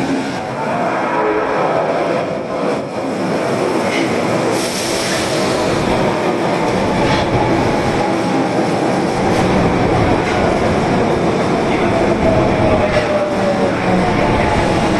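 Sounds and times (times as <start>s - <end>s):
subway train rumbling: 0.0s - 14.9s.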